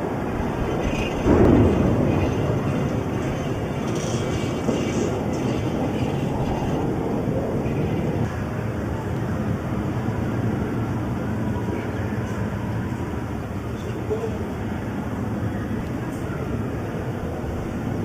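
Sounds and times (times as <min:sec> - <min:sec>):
loud rumbling noise: 0:00.0 - 0:18.0.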